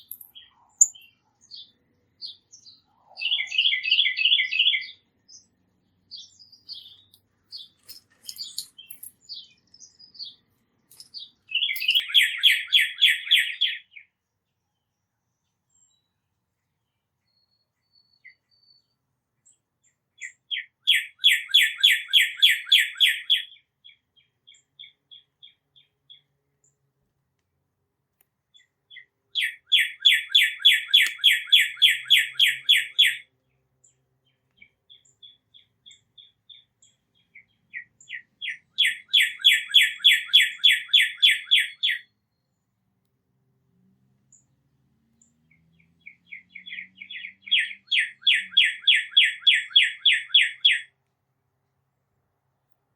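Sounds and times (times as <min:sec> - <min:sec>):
songbird trilling: 0:00.0 - 0:05.0, 0:06.1 - 0:14.0, 0:20.2 - 0:26.3, 0:28.5 - 0:33.3, 0:34.6 - 0:42.2, 0:45.8 - 0:50.9
short bird chirps: 0:06.1 - 0:14.1, 0:17.2 - 0:19.6.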